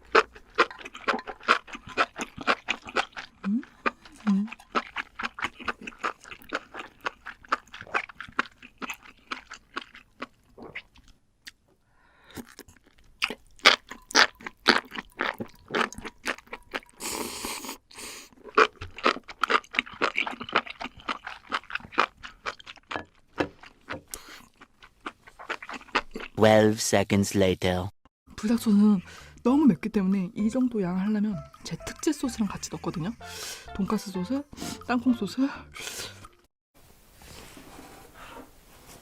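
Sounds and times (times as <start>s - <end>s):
crunching and chewing: 0.0s - 11.7s, 12.3s - 26.4s.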